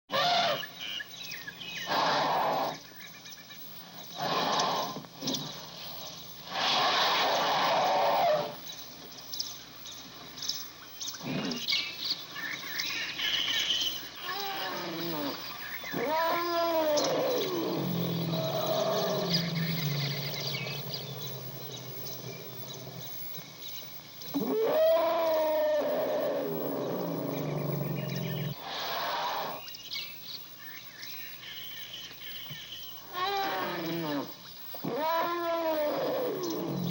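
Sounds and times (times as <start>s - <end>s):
elephant roaring calls: 0.1s - 0.7s, 1.8s - 2.9s, 4.1s - 5.6s, 6.4s - 8.7s, 11.2s - 11.8s, 13.3s - 23.4s, 24.3s - 29.7s, 33.1s - 36.9s
birds chirping faintly: 0.1s - 36.9s
elephant low rumble: 14.2s - 29.4s.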